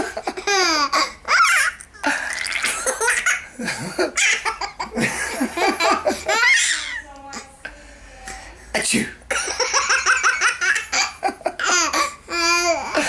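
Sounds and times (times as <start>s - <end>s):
baby laughing: 0.0s - 7.0s, 9.6s - 13.0s.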